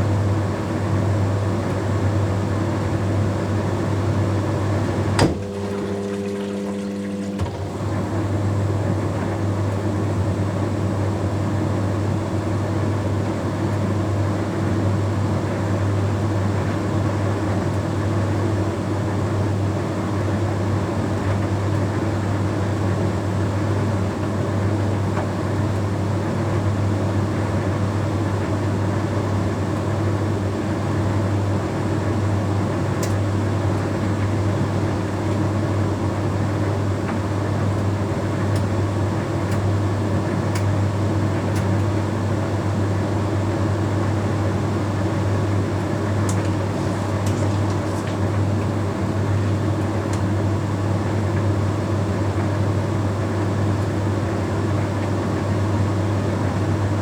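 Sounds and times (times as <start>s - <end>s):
tumble dryer humming: 0.2s - 12.0s, 37.8s - 52.0s.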